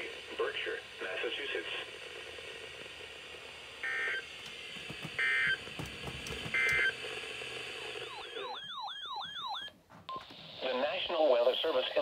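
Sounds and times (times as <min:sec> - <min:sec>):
broadcast hiss: 0:00.0 - 0:08.5, 0:10.2 - 0:12.0
electronic squawks: 0:03.8 - 0:04.2, 0:05.2 - 0:05.6, 0:08.0 - 0:09.7.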